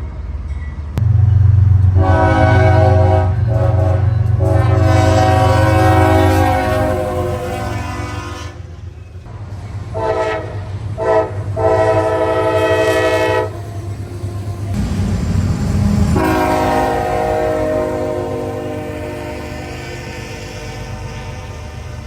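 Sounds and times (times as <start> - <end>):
steady low rumble: 1.0 - 6.5, 13.5 - 19.8
train air horn blasts: 1.8 - 8.9, 9.9 - 22.0.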